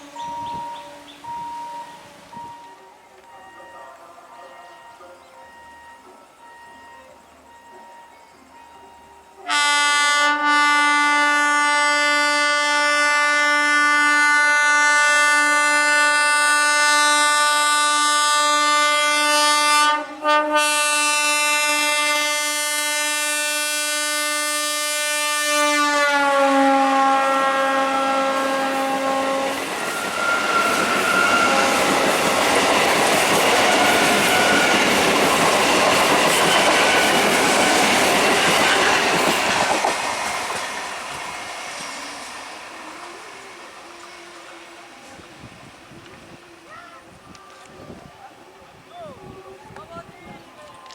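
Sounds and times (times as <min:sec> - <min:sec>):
train horn blast: 0:00.0 - 0:07.9, 0:09.3 - 0:35.1
train wheels clattering on rail: 0:29.5 - 0:42.7.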